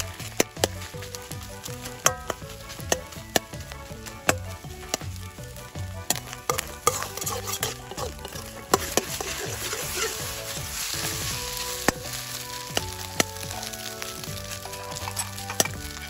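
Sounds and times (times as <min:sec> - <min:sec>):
rice sizzling in a wok: 0:00.0 - 0:16.0
utensil knocking against pan: 0:06.1 - 0:09.6.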